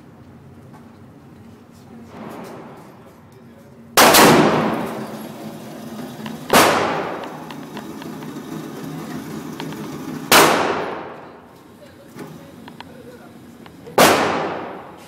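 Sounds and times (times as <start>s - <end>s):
pistol shots echoing: 4.0s - 5.0s, 6.5s - 7.4s, 10.3s - 11.3s, 14.0s - 15.0s.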